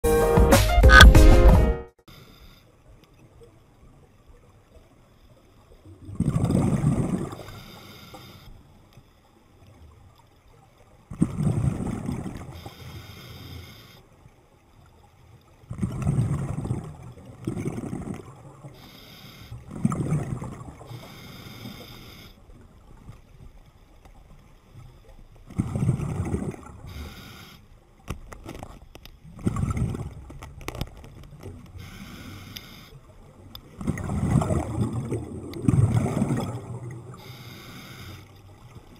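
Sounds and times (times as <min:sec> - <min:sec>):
quiet water sound: 0:02.0 - 0:38.9
underwater air bubbles rushing: 0:05.9 - 0:07.5, 0:15.6 - 0:18.8, 0:19.6 - 0:21.1, 0:25.5 - 0:27.0, 0:29.2 - 0:31.9, 0:33.0 - 0:37.3.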